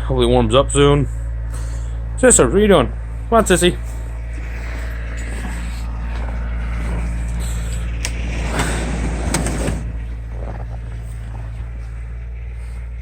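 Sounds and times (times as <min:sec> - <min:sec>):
engine humming: 0:00.0 - 0:13.0
rustling: 0:03.9 - 0:13.0.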